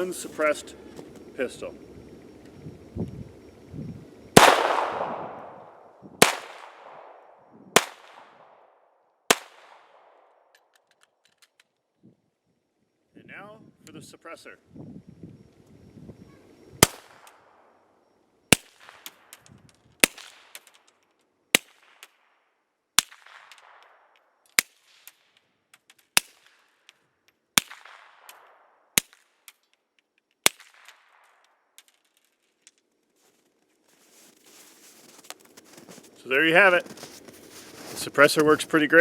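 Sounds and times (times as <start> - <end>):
suppressed handgun shots: 4.4 - 8.6.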